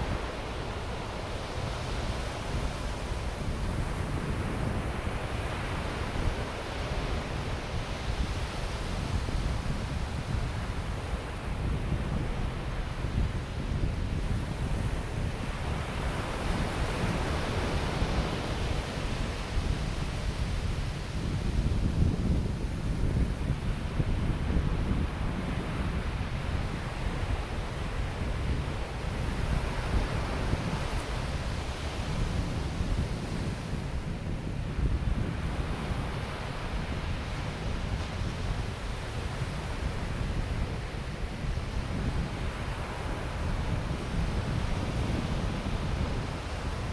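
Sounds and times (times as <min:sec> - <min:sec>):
wind buffeting the microphone: 0:00.0 - 0:46.9
ocean surf on beach: 0:22.7 - 0:46.9.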